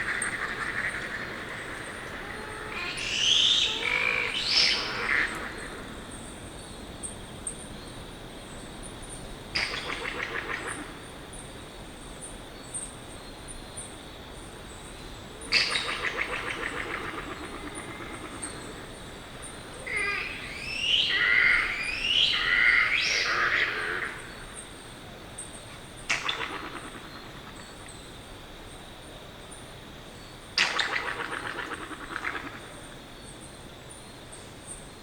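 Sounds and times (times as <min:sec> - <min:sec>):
warbling wavering shrieks: 0:00.0 - 0:05.6, 0:19.8 - 0:24.2.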